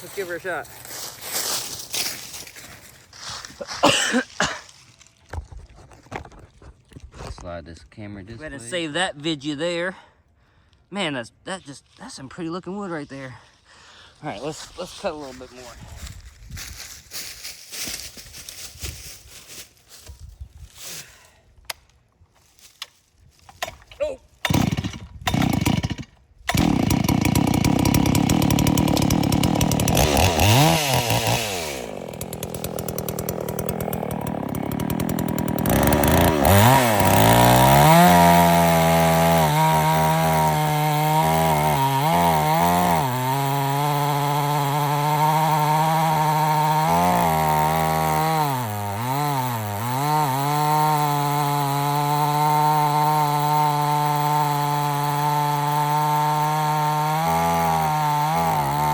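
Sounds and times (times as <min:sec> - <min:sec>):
chainsaw cutting through log: 0:23.5 - 0:58.9.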